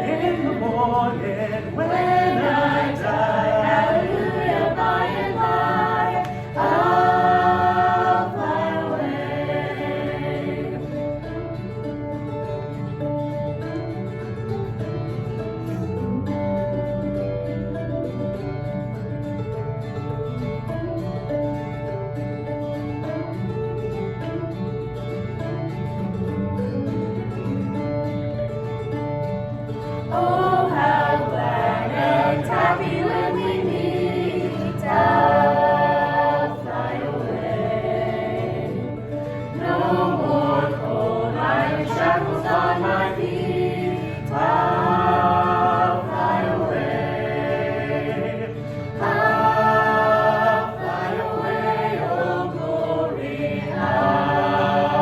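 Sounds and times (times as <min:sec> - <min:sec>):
people singing gospel: 0:00.0 - 0:11.2, 0:29.9 - 0:55.0
acoustic guitar: 0:00.0 - 0:55.0.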